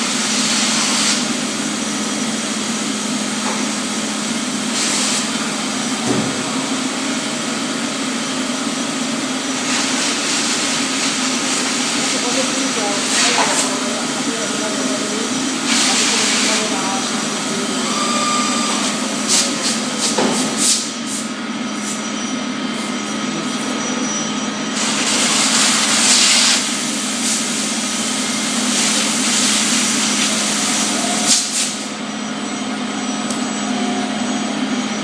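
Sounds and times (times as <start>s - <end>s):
hiss of metal being machined: 15.6s - 22.0s.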